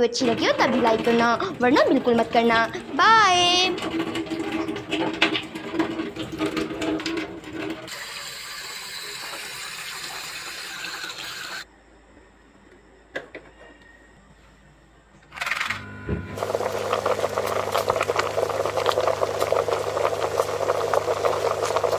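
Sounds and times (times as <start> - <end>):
water running from tap: 0.3 - 11.6, 16.4 - 21.9.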